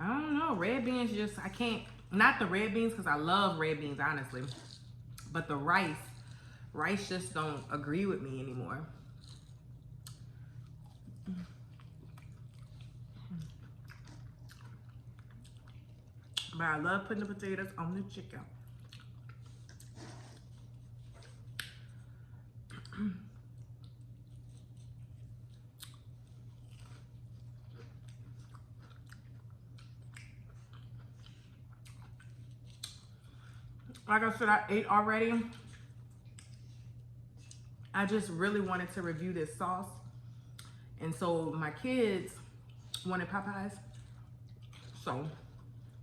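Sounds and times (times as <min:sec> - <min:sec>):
low steady hum: 0:00.0 - 0:46.0
chewing: 0:04.2 - 0:05.4, 0:09.0 - 0:16.6, 0:18.4 - 0:34.1, 0:35.5 - 0:37.9, 0:43.8 - 0:46.0.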